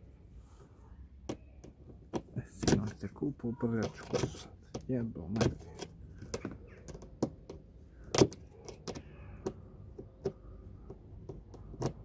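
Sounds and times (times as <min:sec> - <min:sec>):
tools clicking and knocking: 0:03.8 - 0:12.0.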